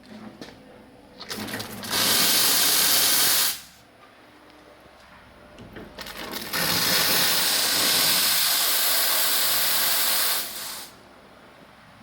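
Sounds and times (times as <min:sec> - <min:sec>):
steam wand hissing: 0:01.9 - 0:03.8, 0:06.7 - 0:11.0.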